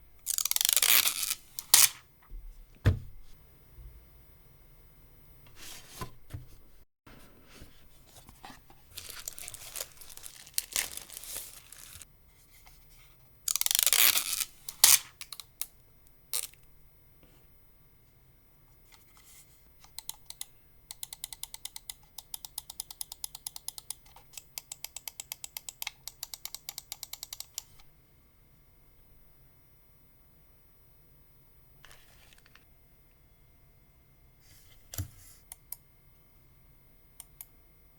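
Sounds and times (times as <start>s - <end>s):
packaging rustling and tearing: 0.3s - 2.0s, 8.3s - 12.0s, 13.5s - 15.1s.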